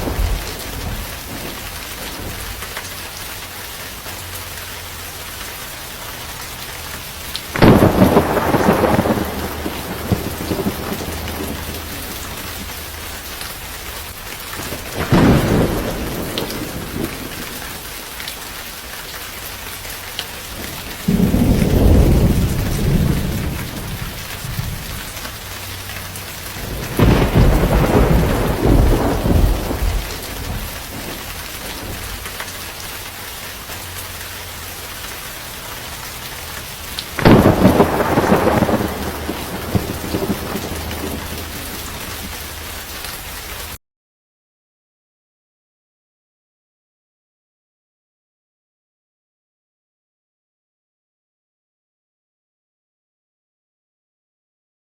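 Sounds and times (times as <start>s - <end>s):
thunder rolling: 0.0s - 3.0s, 7.4s - 18.0s, 20.5s - 32.9s, 37.0s - 42.8s
steady rain: 0.0s - 43.8s.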